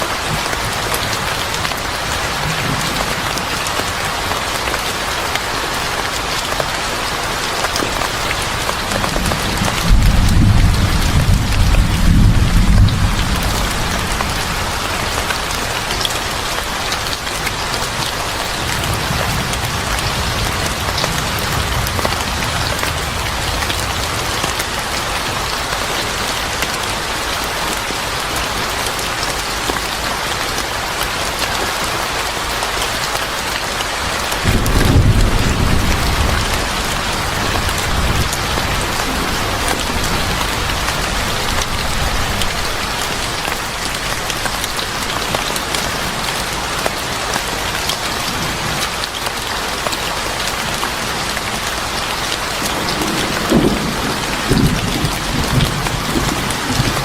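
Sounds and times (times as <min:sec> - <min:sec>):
heavy rain falling: 0:00.0 - 0:57.0
thunder rumbling: 0:08.5 - 0:16.4, 0:34.4 - 0:44.6, 0:52.6 - 0:57.0.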